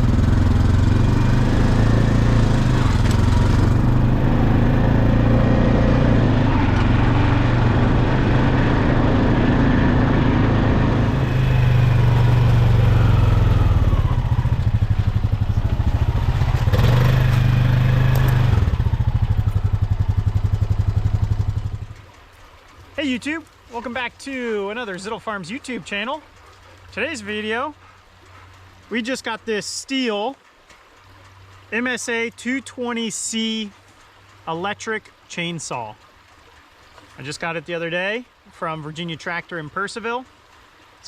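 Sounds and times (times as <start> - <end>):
motor running with deep rumble: 0.0 - 22.1.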